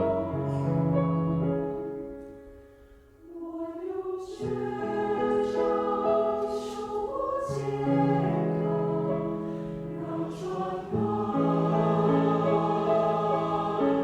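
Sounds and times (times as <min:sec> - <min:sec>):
choir singing sustained chords: 0:03.0 - 0:14.0.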